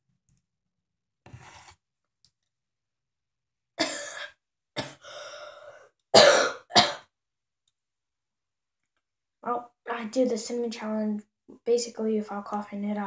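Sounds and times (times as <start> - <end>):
person coughing: 3.8 - 5.0, 6.2 - 7.1.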